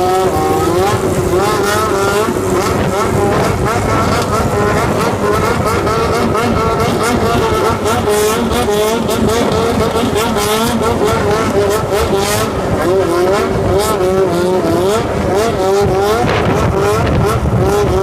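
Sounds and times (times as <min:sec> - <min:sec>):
engines revving: 0:00.0 - 0:18.0
low rumble: 0:00.0 - 0:18.0.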